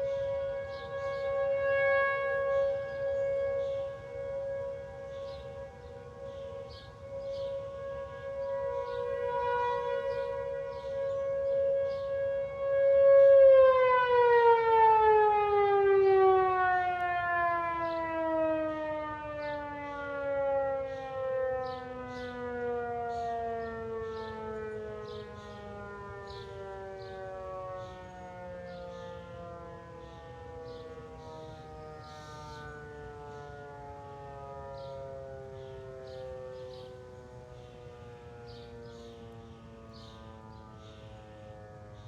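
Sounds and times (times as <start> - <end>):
warning siren wailing: 0.0 - 42.0.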